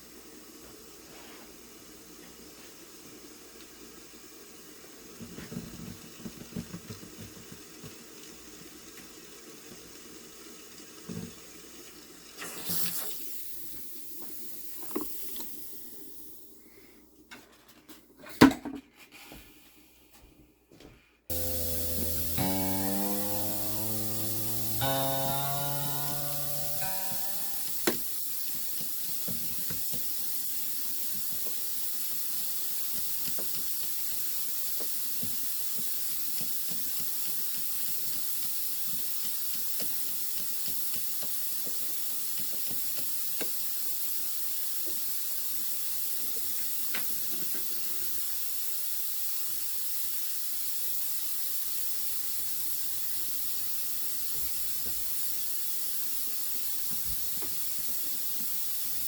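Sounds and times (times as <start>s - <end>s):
steam hissing: 21.3s - 59.0s.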